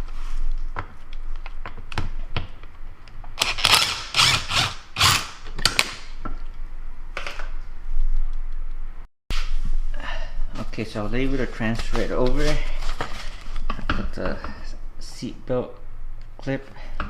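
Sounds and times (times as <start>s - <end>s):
ratchet wrench clicking: 3.4s - 5.4s.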